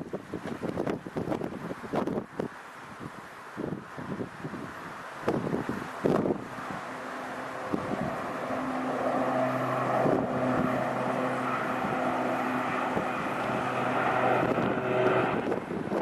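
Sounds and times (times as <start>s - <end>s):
jet engines droning: 4.8s - 16.0s.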